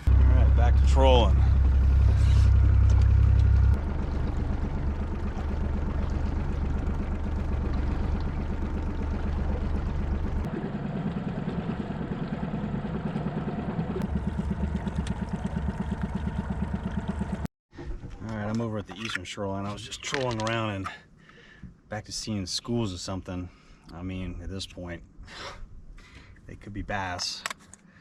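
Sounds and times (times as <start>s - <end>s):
boat motor pulsing: 0.0s - 19.2s.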